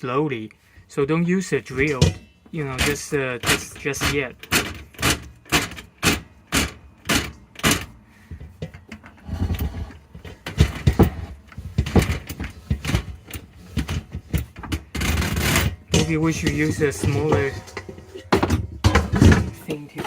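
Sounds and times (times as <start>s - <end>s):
drain snake cable knocks and clatter: 1.6s - 20.0s.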